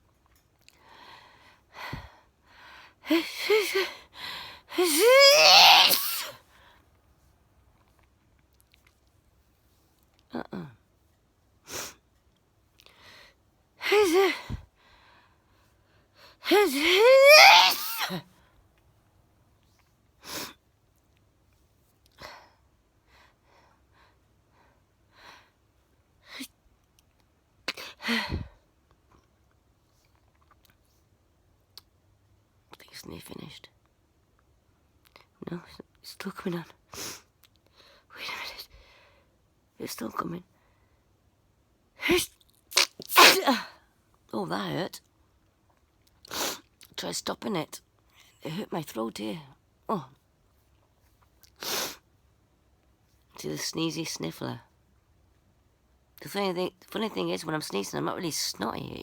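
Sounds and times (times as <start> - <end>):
woman sneezing: 4.8 - 6.4, 16.5 - 18.2, 42.8 - 43.8.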